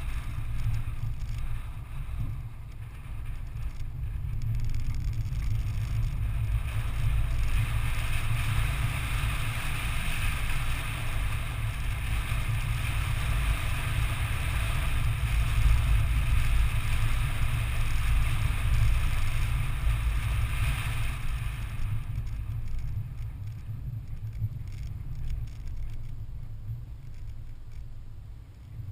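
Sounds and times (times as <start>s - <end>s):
engine and tyres rumbling: 0.0s - 28.9s
hiss from the ground: 5.2s - 23.3s.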